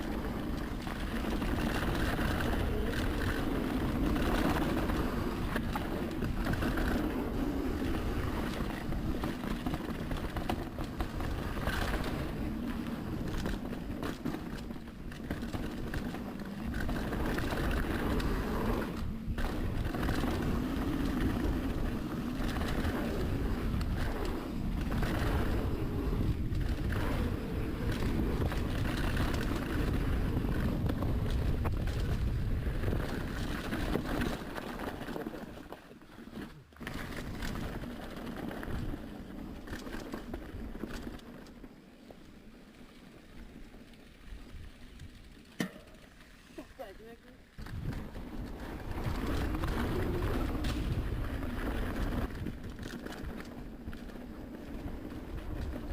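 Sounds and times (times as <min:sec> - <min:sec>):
bike tyre noise: 0:00.0 - 0:55.9
bike knocks and rattles: 0:08.2 - 0:41.5, 0:45.0 - 0:46.3
wind rushing over microphone: 0:16.8 - 0:34.2.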